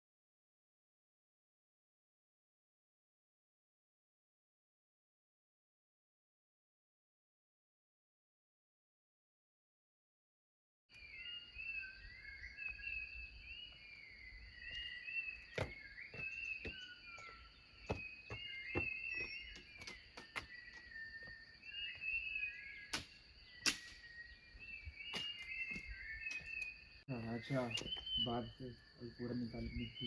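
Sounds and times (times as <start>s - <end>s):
insects chirping: 10.9s - 30.0s
high cricket trill: 11.0s - 30.0s.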